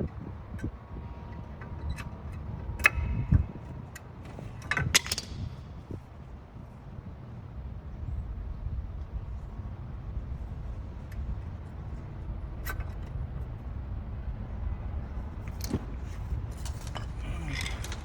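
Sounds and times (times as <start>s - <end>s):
metal tools clinking: 15.5s - 18.0s.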